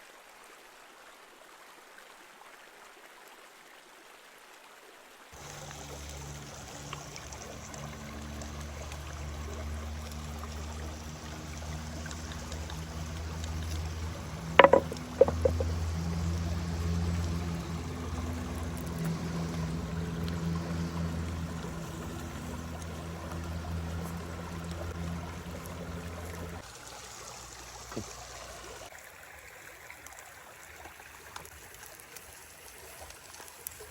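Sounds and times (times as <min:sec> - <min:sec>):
flowing river water: 0:00.0 - 0:33.9
sharp knocks or clinks: 0:14.6 - 0:15.8.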